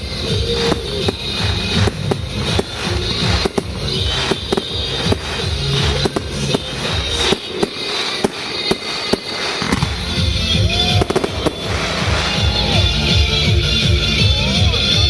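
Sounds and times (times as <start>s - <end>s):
fireworks banging: 0.0s - 15.0s
music playing: 0.0s - 15.0s.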